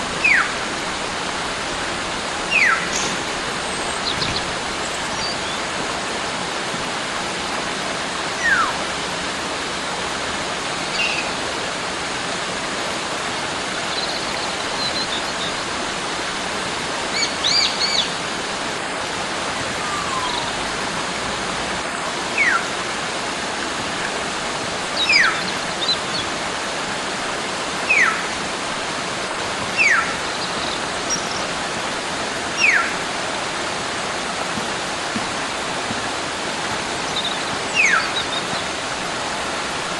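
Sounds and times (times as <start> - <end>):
stream rushing: 0.0 - 39.9
bird whistling: 2.5 - 3.1, 8.4 - 8.7, 19.8 - 20.6, 22.4 - 22.6, 27.9 - 28.2, 29.8 - 30.1, 32.6 - 32.9, 37.2 - 38.4
high bird chirps: 19.8 - 20.6.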